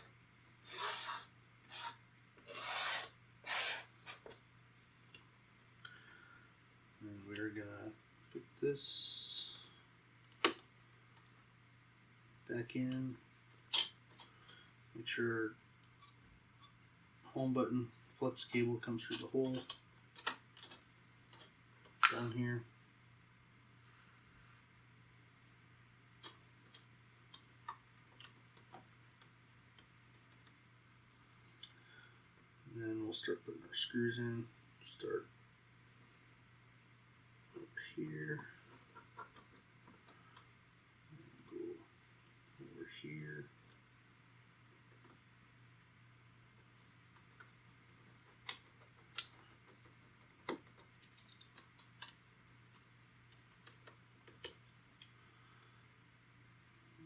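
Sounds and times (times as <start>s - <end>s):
small tools clicking on metal: 50.1s - 55.1s.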